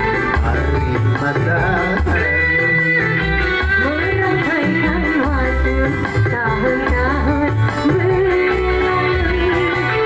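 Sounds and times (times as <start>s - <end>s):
guitar melody: 0.0s - 10.0s
pulsing bass: 0.0s - 10.0s.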